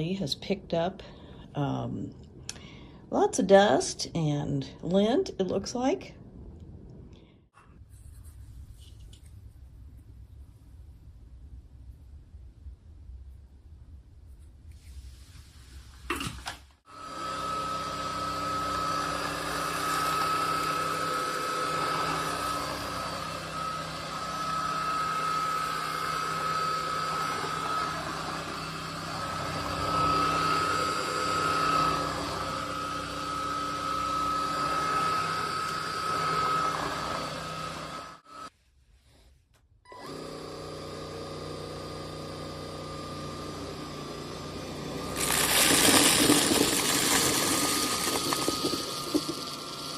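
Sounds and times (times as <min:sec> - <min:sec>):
stick vacuum motor whine: 0:16.9 - 0:38.5, 0:39.9 - 0:49.9.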